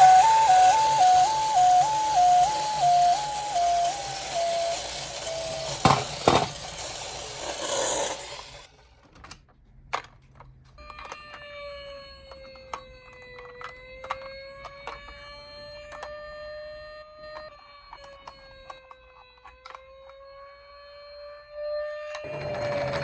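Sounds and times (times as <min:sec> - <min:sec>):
slow wailing siren: 0:00.0 - 0:04.9, 0:10.8 - 0:23.0
two-tone electronic toy siren: 0:00.0 - 0:06.5, 0:10.8 - 0:23.0.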